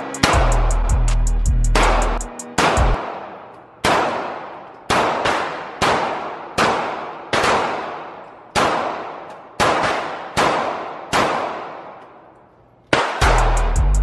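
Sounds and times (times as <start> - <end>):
handgun shots echoing indoors: 1.7 - 13.8.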